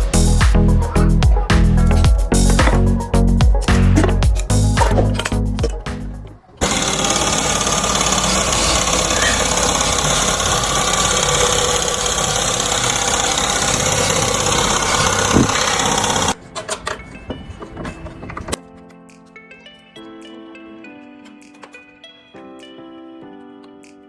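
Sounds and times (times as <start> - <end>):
car engine running: 6.6 - 16.4.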